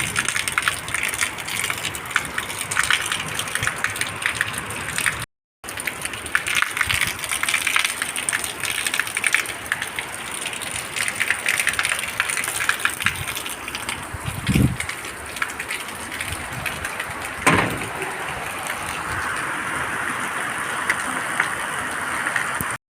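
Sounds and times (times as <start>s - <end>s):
heavy rain falling: 0.0s - 22.8s
low thump: 17.4s - 18.2s
sharp knock: 17.5s - 18.0s.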